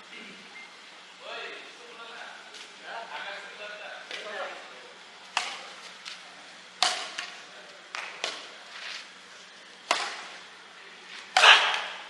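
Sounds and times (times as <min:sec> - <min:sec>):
badminton racket hitting shuttlecock: 0:05.4 - 0:05.7, 0:06.8 - 0:07.3, 0:09.9 - 0:10.4, 0:11.4 - 0:12.0.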